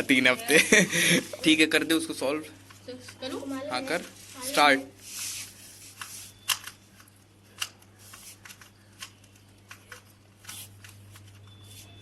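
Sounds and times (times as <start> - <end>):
plastic puzzle cube clicking: 6.4 - 11.0.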